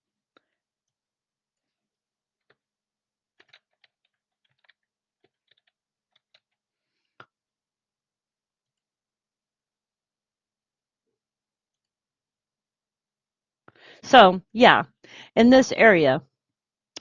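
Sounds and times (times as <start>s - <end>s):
typing on computer keyboard: 3.4s - 6.6s.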